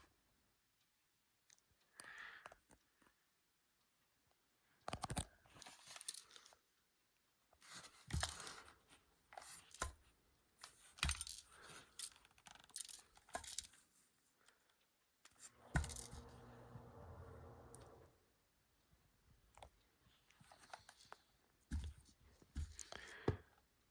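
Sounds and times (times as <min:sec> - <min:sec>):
handling knocks and clicks: 0:07.8 - 0:08.7, 0:09.4 - 0:13.8, 0:15.3 - 0:16.4, 0:21.7 - 0:23.5.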